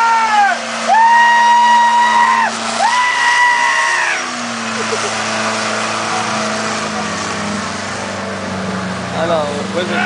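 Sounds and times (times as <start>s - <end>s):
long horn blasts: 0.0s - 4.6s
vehicle engine running: 0.0s - 10.0s.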